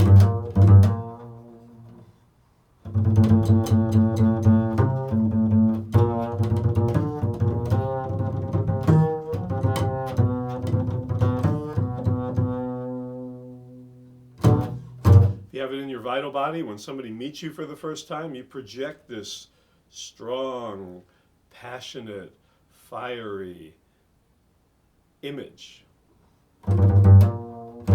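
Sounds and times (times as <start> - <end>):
low string instrument playing: 0.0 - 2.1, 2.8 - 15.5, 26.6 - 27.9.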